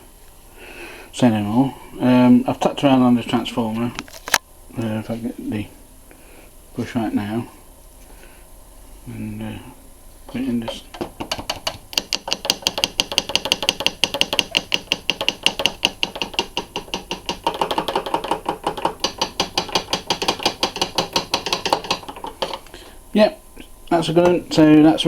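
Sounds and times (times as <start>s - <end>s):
disc drive mechanism clicking: 10.3s - 23.0s.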